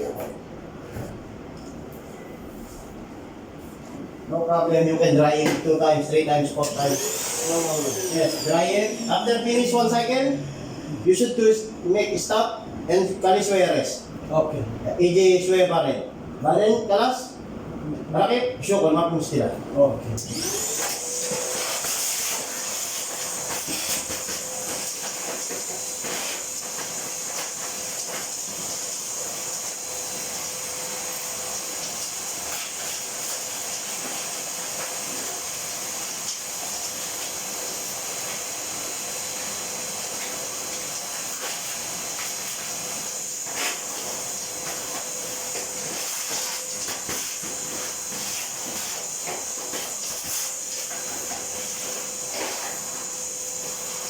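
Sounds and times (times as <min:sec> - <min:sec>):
electric motor whining: 0:06.7 - 0:10.9, 0:20.3 - 0:21.8.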